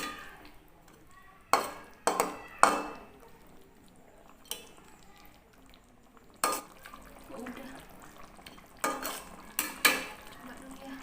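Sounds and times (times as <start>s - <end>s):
metal utensil clinking on pan: 0.0s - 3.1s, 4.4s - 4.8s, 6.4s - 6.8s, 8.4s - 10.2s
stew simmering: 0.0s - 11.0s.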